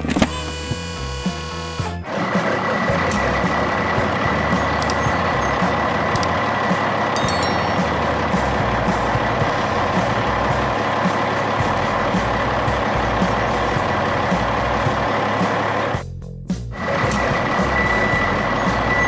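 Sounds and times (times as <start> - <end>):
heavy truck engine running: 0.0 - 19.0
background music: 0.2 - 16.0, 16.6 - 19.0
high-pitched tone: 7.2 - 8.6.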